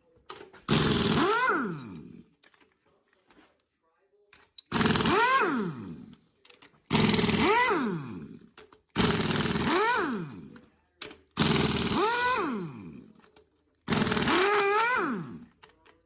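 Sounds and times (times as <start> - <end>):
impact wrench hammering: 0.7 - 2.2, 4.7 - 6.1, 6.9 - 10.6, 11.3 - 13.2, 13.9 - 15.5
impact wrench click: 4.7 - 15.8.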